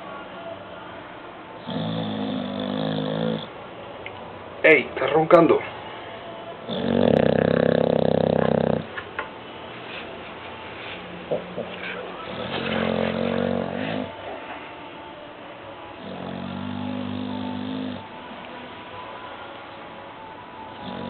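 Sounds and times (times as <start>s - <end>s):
dog snoring: 1.6s - 3.5s, 6.6s - 9.0s, 11.8s - 14.2s, 16.0s - 18.1s, 20.7s - 21.0s.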